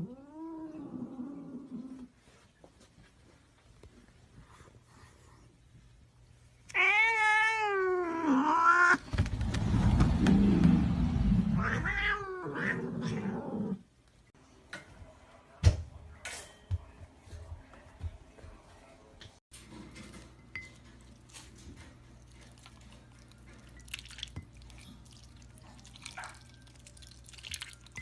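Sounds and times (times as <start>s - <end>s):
cat yowling: 6.7s - 9.0s, 11.6s - 13.6s.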